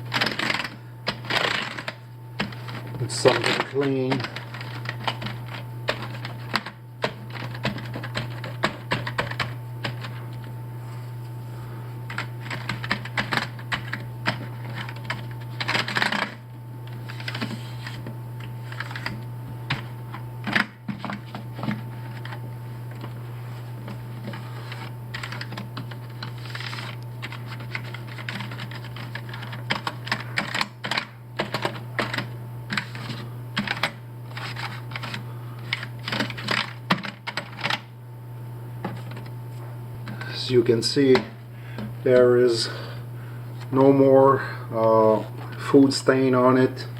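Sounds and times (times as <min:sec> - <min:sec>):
steady low hum: 0:00.0 - 0:46.9
keyboard keys clicking and rattling: 0:00.1 - 0:10.2, 0:12.1 - 0:16.4, 0:24.3 - 0:37.8.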